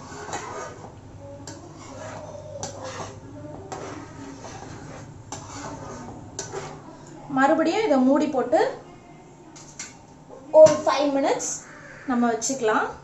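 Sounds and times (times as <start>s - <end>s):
spoon stirring thick gravy: 0.0s - 7.3s.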